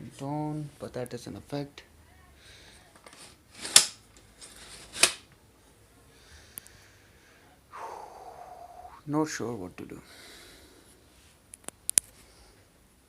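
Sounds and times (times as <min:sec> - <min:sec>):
soft breathy hiss: 0:02.0 - 0:03.4, 0:05.6 - 0:13.0
sharp puffs of breath: 0:06.2 - 0:09.0.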